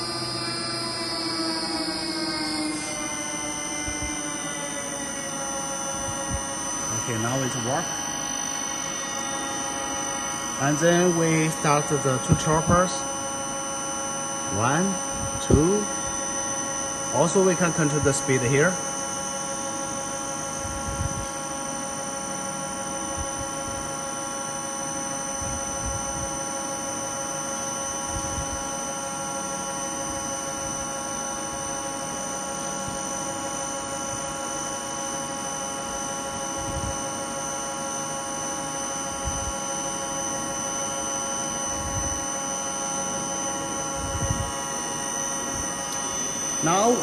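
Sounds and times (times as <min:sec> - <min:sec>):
low mechanical rumble: 0:00.0 - 0:13.0, 0:43.3 - 0:47.0
electric motor whine: 0:00.0 - 0:47.0.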